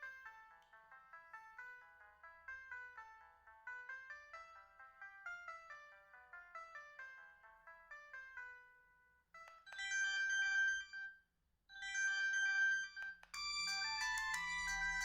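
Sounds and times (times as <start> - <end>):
phone ringtone melodies: 9.6 - 11.1, 11.8 - 15.0.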